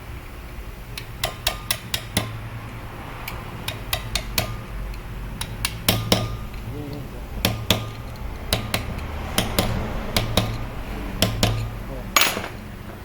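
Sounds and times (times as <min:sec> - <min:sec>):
steady low hum: 0:00.0 - 0:13.0
metal parts clinking: 0:12.2 - 0:13.0.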